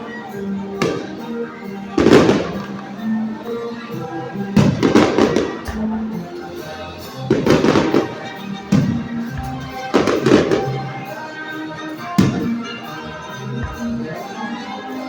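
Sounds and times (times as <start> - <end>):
music playing: 0.0 - 15.0
fireworks booming: 0.5 - 11.2, 11.8 - 12.7.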